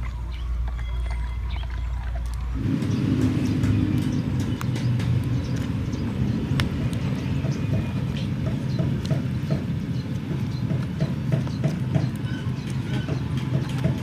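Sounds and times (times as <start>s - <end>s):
motor droning: 0.0s - 6.7s.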